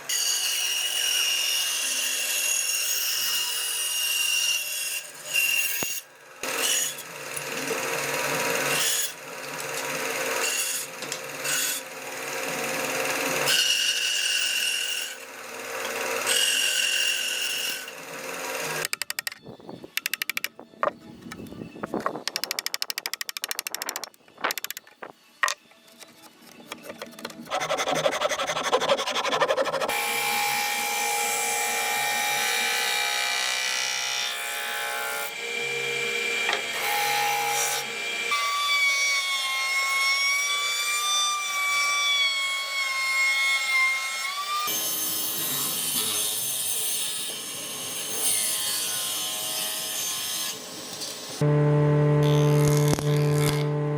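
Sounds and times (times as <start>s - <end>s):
pitched whine: 51.4s - 53.9s.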